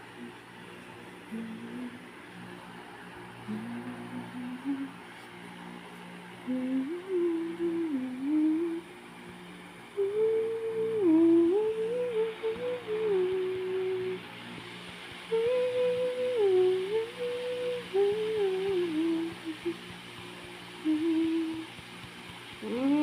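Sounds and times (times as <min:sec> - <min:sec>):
low sustained drone: 0:00.0 - 0:23.0
person humming a melody: 0:01.3 - 0:02.2, 0:03.4 - 0:05.1, 0:06.4 - 0:08.9, 0:09.9 - 0:14.6, 0:15.3 - 0:20.0, 0:20.8 - 0:21.8, 0:22.6 - 0:23.0.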